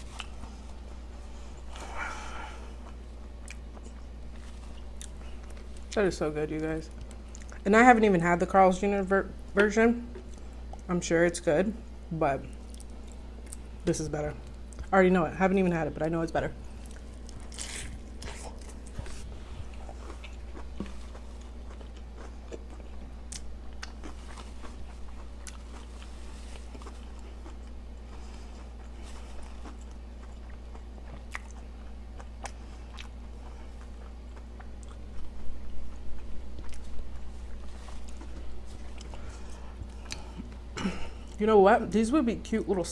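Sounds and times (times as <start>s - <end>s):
steady low hum: 0.0s - 42.9s
close chewing: 2.6s - 6.0s, 16.7s - 41.4s.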